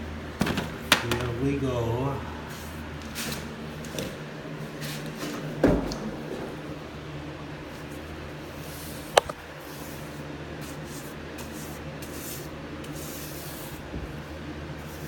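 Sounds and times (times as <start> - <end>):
paintbrush swishing on wood: 8.5 - 13.9.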